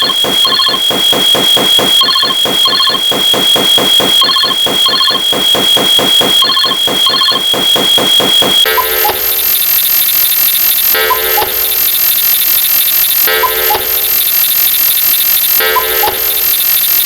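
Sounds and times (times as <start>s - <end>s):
phone ringing: 0.0s - 9.2s.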